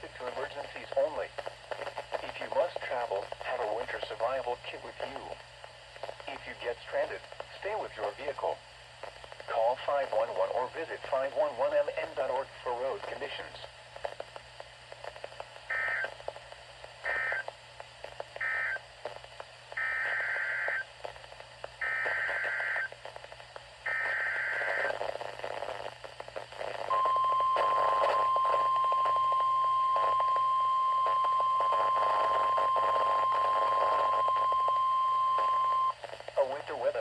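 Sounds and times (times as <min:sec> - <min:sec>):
steady warning alarm tone: 0:26.9 - 0:35.9.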